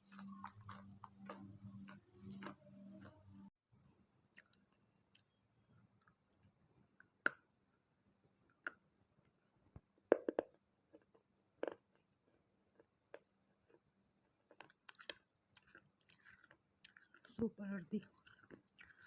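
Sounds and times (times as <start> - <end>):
clay being chewed crunching: 0.0 - 3.5, 4.3 - 5.4, 10.1 - 17.3, 18.0 - 19.0.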